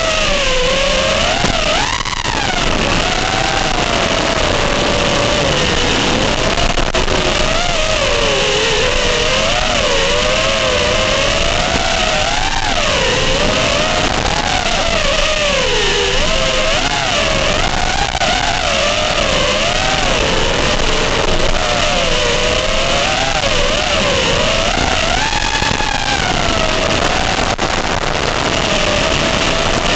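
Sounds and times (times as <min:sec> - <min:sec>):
drone motors and propellers whining: 0:00.0 - 0:29.9.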